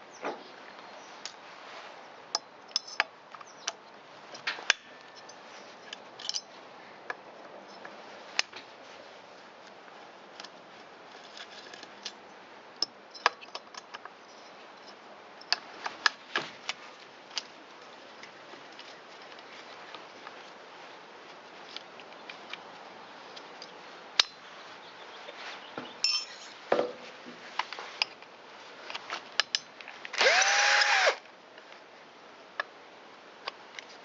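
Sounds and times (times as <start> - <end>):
small metal parts clicking and tapping: 2.7 - 3.5.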